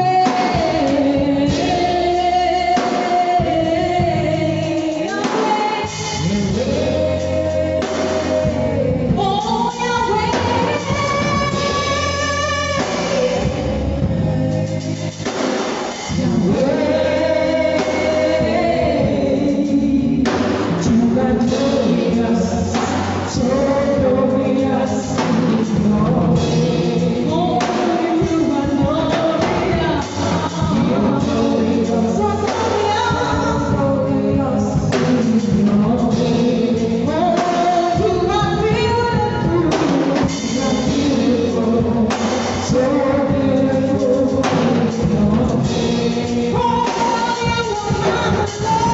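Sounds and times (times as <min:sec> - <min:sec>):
band with drum kit: 0:00.0 - 0:48.9
voices singing gospel: 0:00.0 - 0:48.9.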